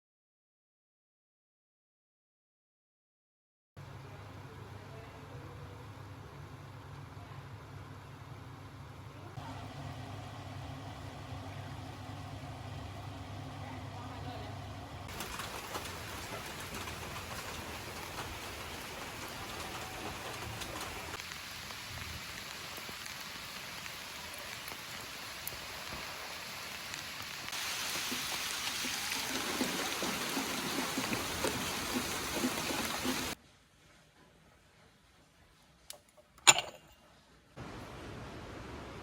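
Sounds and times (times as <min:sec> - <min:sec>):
rain falling: 0:15.0 - 0:33.4.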